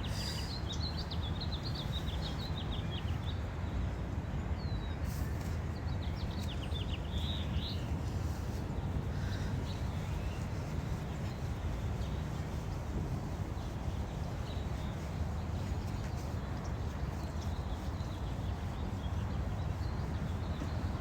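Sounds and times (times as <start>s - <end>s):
steady low rumble: 4.7s - 21.0s.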